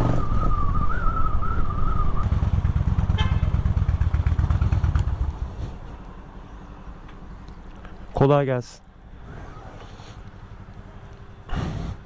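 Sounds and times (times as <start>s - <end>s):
thin wavering whistle: 0.0s - 2.3s
motorcycle engine rumbling: 0.0s - 12.0s.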